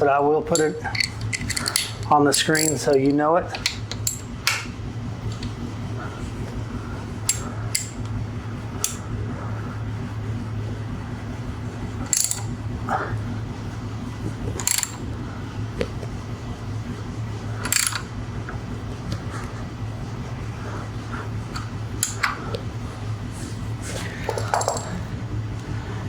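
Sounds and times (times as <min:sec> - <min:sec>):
steady low hum: 0:00.0 - 0:26.0
metal tools clicking: 0:00.5 - 0:04.3, 0:07.3 - 0:08.0, 0:12.0 - 0:12.6, 0:14.6 - 0:15.0, 0:17.6 - 0:18.1, 0:21.5 - 0:22.3.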